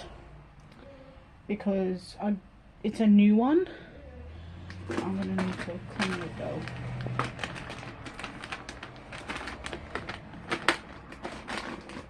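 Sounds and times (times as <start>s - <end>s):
slime clicking and crackling: 5.2s - 11.9s.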